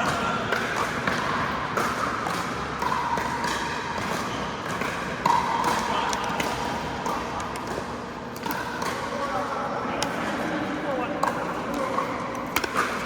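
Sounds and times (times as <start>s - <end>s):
ball bouncing on court: 0.0s - 9.4s, 11.2s - 13.0s
paddles hitting plastic ball: 11.2s - 13.0s.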